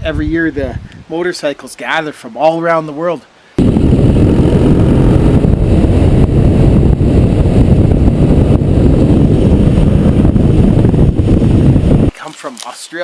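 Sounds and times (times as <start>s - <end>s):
wind buffeting microphone: 0.0s - 1.1s, 3.6s - 12.2s
motorcycle engine running: 3.6s - 12.1s.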